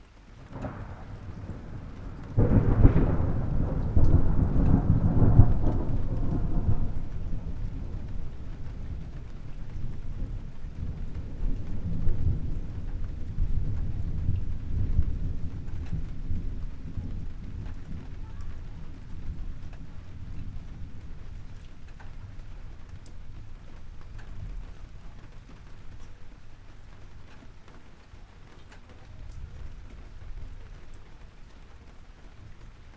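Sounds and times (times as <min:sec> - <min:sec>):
steady rain: 0:00.0 - 0:32.9
thunder rumbling: 0:00.4 - 0:32.9.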